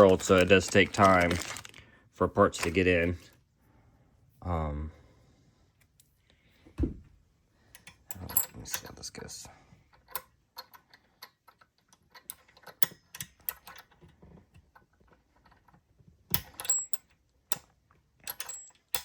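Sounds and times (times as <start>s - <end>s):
parts clattering: 0.0s - 1.8s, 9.8s - 19.0s
small hard parts clicking: 0.0s - 1.8s, 9.9s - 19.0s.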